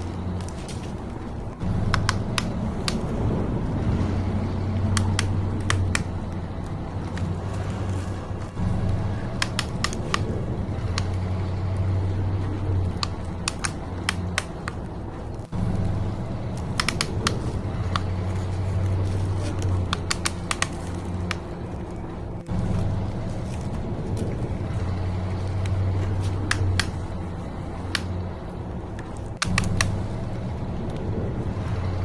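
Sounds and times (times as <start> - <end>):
sharp clicks and rattles: 8.4 - 28.3, 28.9 - 31.9.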